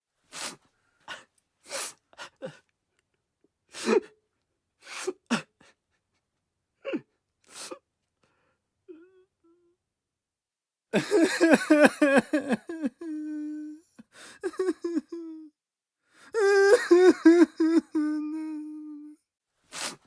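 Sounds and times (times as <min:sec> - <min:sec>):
man sobbing: 0:06.8 - 0:07.1, 0:11.0 - 0:15.5, 0:16.3 - 0:19.2.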